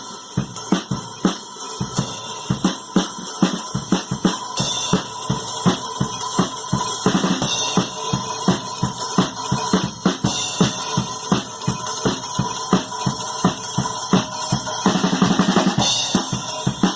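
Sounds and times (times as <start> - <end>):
ringing cymbals: 0.0 - 16.9.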